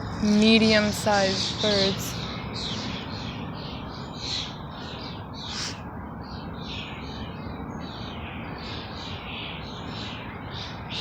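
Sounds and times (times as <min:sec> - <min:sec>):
birds giving harsh calls: 0:00.7 - 0:11.0
rolling bird call: 0:05.4 - 0:05.8.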